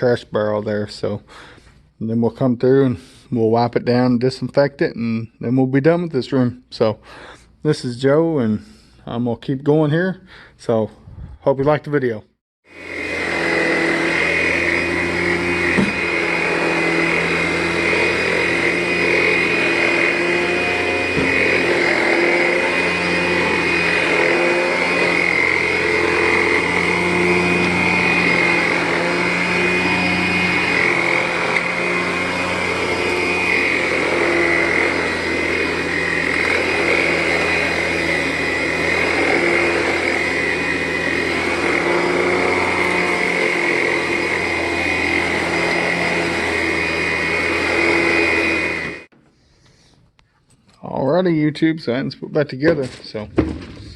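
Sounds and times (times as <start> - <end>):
vacuum cleaner motor whining: 12.6 - 49.1.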